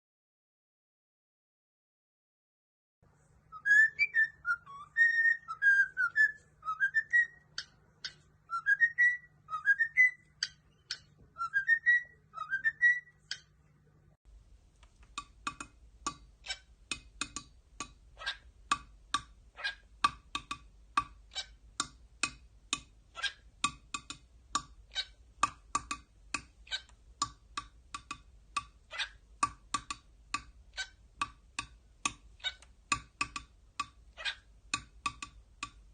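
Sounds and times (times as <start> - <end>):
cockatiel whistling: 3.5 - 13.5
cockatiel clicks: 14.8 - 18.0, 20.0 - 28.8, 29.4 - 35.9
ticking chirps: 14.8 - 35.9.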